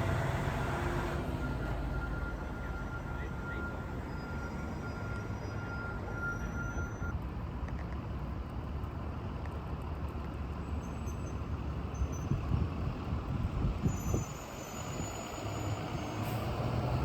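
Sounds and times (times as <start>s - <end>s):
heavy vehicle engine rumble: 0.0s - 7.6s
city street traffic: 0.0s - 17.0s.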